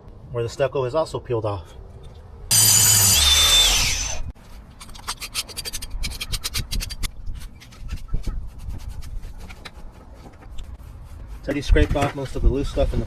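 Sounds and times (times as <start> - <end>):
power tool whine: 2.5 - 4.3
scraper scraping stucco: 5.0 - 13.0.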